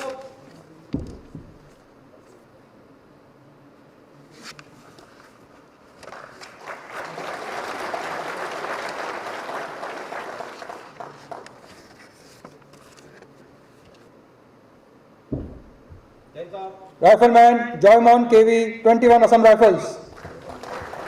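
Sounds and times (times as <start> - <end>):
audience applauding: 6.0 - 11.7, 20.1 - 21.0.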